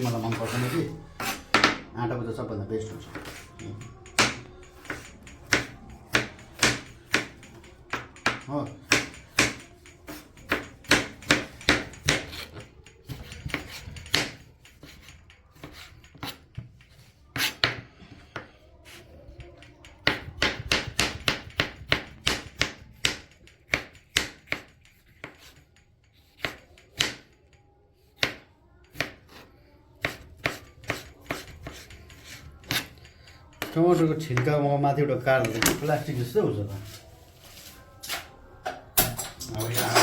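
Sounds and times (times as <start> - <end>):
knife chopping on cutting board: 0.0 - 1.8, 3.0 - 16.4, 17.3 - 19.0, 20.0 - 25.6, 30.0 - 33.0.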